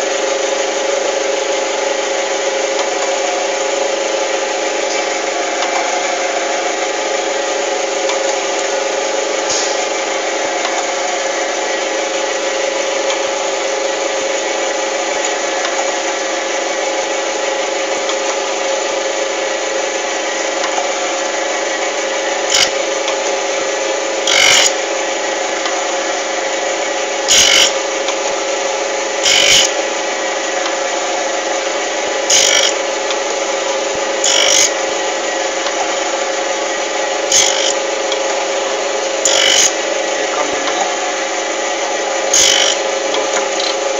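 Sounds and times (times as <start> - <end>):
grinder machine hum: 0.0 - 43.9
short noisy grinding bursts: 21.5 - 23.0, 23.6 - 43.9.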